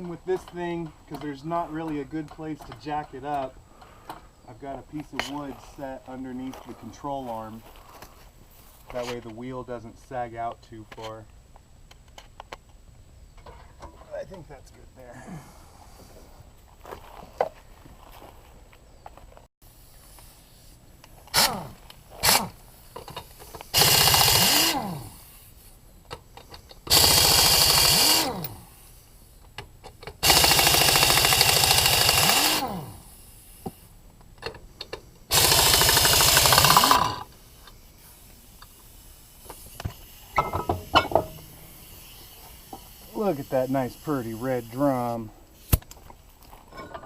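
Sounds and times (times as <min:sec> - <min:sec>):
impact wrench hammering: 0:30.0 - 0:32.7, 0:35.3 - 0:37.2, 0:40.3 - 0:41.7.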